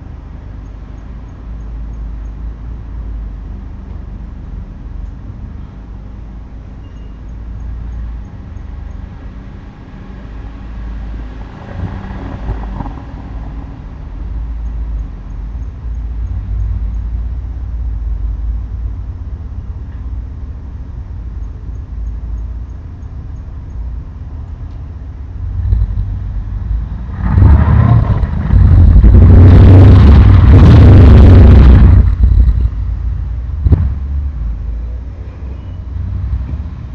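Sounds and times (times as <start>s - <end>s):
low traffic rumble: 0.0s - 36.9s
vehicle passing close: 9.0s - 14.5s, 25.1s - 36.9s.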